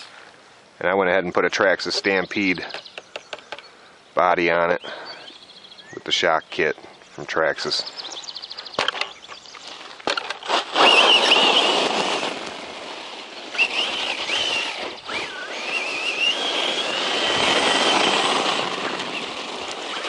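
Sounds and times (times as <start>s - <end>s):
rough tyre and drivetrain noise: 8.0s - 20.0s
electric motor whining: 10.8s - 12.5s, 13.5s - 20.0s.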